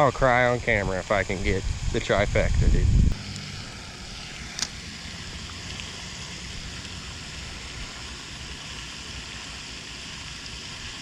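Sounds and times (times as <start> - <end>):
even hiss: 0.0 - 11.0.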